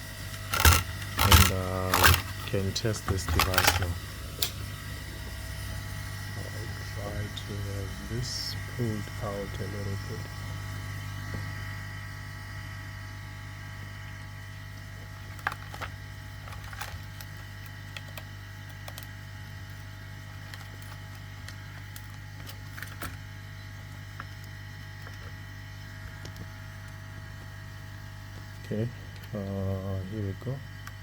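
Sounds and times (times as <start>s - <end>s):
thin high whine: 0.0s - 12.7s
low electrical hum: 0.0s - 31.0s.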